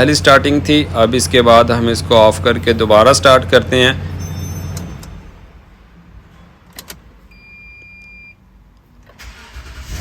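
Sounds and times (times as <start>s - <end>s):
car engine hum: 0.0s - 7.3s.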